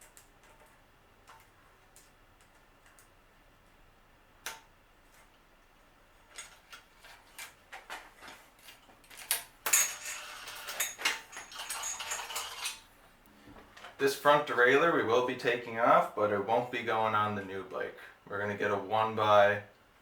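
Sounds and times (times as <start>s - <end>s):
metal tools clicking and clinking: 9.1s - 12.8s.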